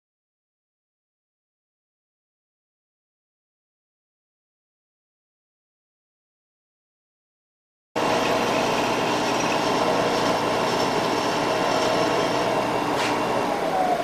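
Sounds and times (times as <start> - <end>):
spindle motor whining: 8.0 - 14.0.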